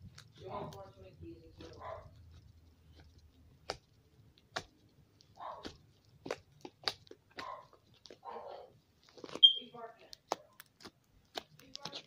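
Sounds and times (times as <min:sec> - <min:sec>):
slime squished by hand: 0:01.5 - 0:12.0
sharp little pops and clicks: 0:02.9 - 0:08.2, 0:09.1 - 0:12.0.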